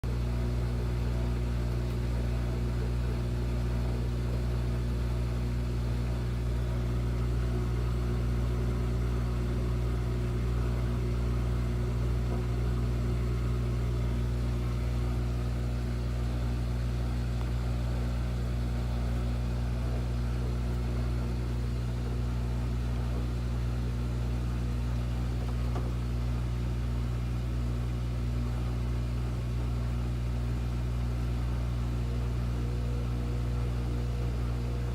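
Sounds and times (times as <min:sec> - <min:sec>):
washing machine motor humming: 0:00.0 - 0:34.9.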